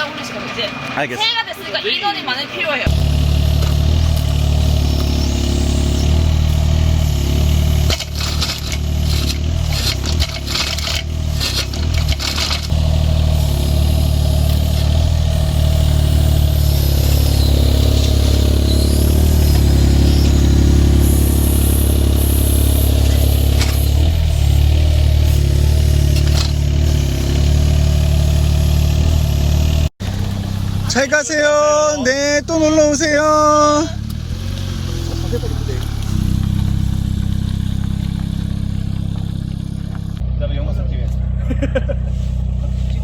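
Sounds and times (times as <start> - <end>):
engine running steadily: 0.0 - 43.0
knocks and clatter: 7.8 - 12.8.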